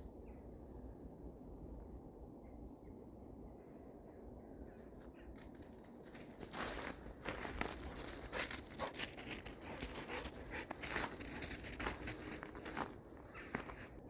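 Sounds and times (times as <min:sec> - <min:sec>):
footsteps crunching in snow: 0:05.4 - 0:14.0.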